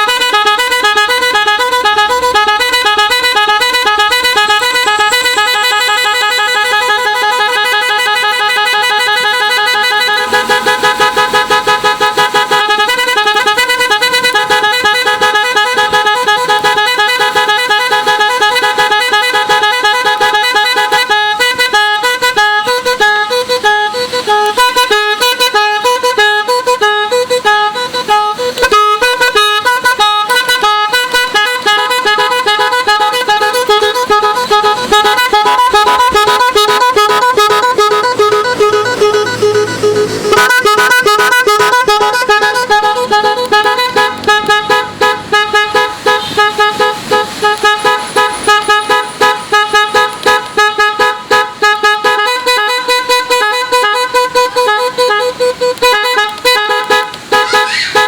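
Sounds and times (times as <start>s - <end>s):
multi-tone motorcycle horn tune: 0.0s - 58.0s.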